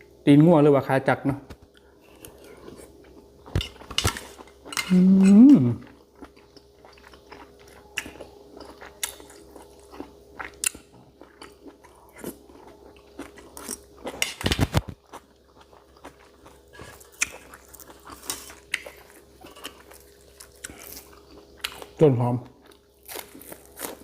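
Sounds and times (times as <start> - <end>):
person chewing and crunching: 1.7 - 24.0
person humming in appreciation: 4.8 - 5.9.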